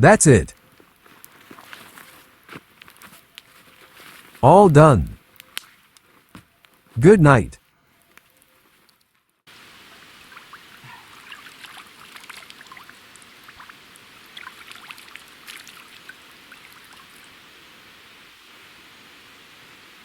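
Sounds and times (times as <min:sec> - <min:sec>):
water trickling and babbling: 0:09.5 - 0:18.0
small water plinks and splashes: 0:10.3 - 0:17.2.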